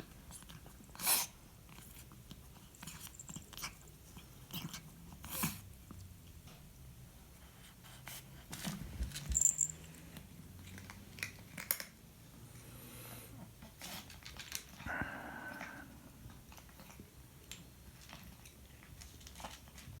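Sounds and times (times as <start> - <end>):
small clicks and rustles: 8.4 - 12.0, 13.6 - 14.8, 16.3 - 20.0
cat breathy noise: 14.8 - 16.2.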